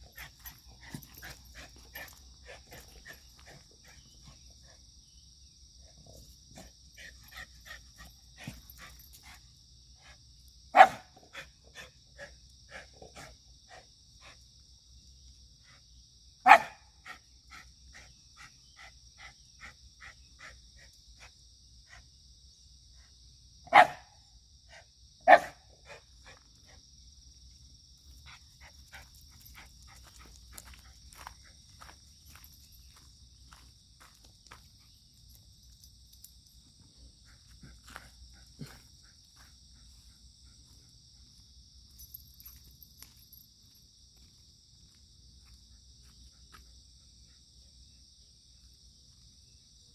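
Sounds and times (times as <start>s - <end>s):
insects chirring: 0.0s - 49.9s
dog barking: 10.7s - 13.3s, 16.4s - 17.2s, 23.7s - 26.0s.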